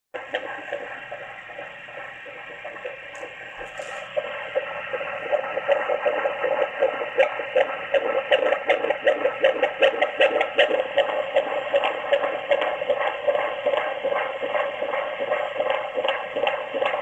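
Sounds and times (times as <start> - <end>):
fetal heartbeat whooshing: 0.2 - 17.0.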